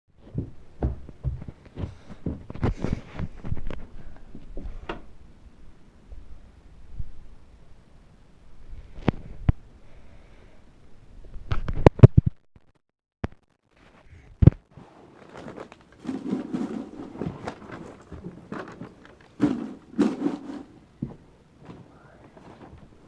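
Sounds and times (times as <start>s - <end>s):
rustling and shuffling: 0.2s - 5.2s, 13.7s - 23.0s
objects knocking and clattering: 14.4s - 21.8s.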